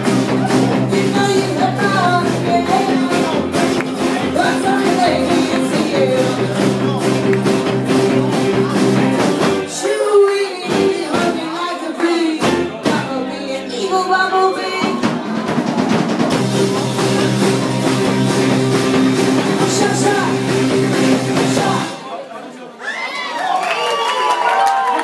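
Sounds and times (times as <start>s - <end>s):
person singing: 0.0s - 15.9s, 16.8s - 22.0s
rock band playing live: 0.0s - 22.1s
drums: 0.0s - 22.3s.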